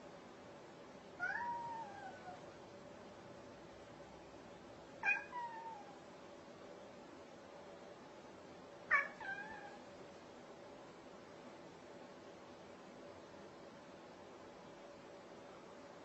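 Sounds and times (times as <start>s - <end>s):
cat meowing: 1.2s - 2.4s, 5.0s - 6.0s, 8.9s - 9.9s.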